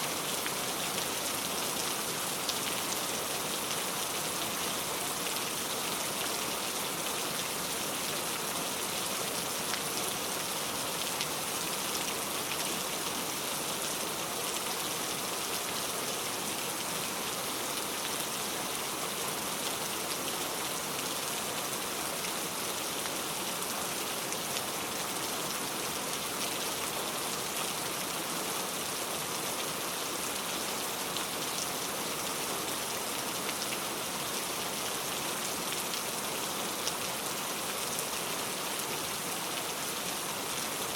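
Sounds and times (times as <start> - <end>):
heavy rain on a road: 0.1 - 40.9.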